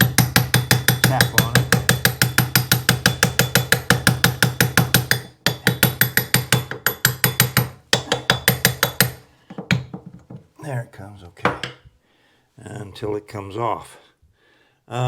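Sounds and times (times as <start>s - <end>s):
mallet knocking on faucet handle: 0.0s - 10.4s.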